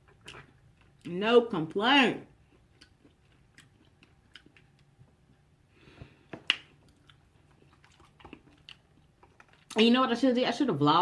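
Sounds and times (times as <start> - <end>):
person chewing food: 0.0 - 1.1, 2.3 - 9.8.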